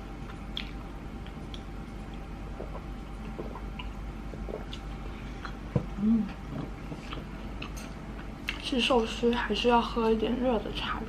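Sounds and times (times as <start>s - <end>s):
sipping and swallowing: 0.2s - 7.8s.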